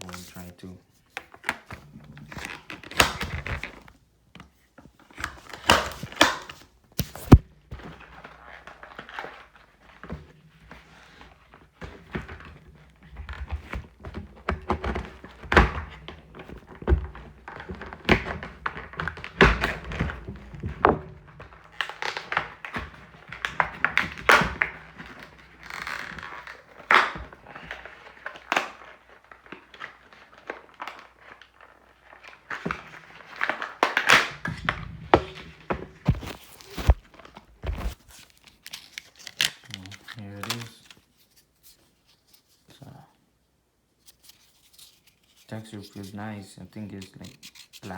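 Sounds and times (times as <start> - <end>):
knocks handling packaging: 1.0 - 41.8
packaging crinkling: 5.0 - 10.1, 10.9 - 42.6.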